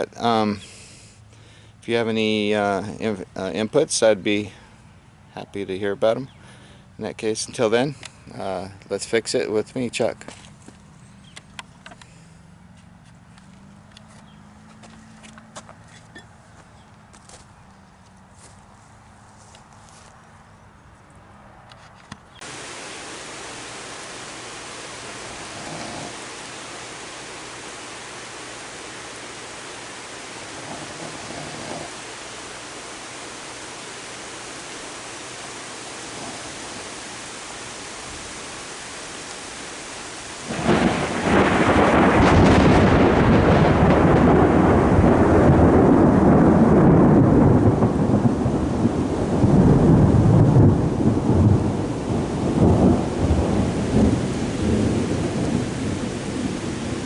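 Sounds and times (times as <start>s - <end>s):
steady hiss: 0.0s - 10.6s, 22.4s - 42.7s, 47.8s - 57.0s
loud rumbling noise: 22.4s - 57.0s.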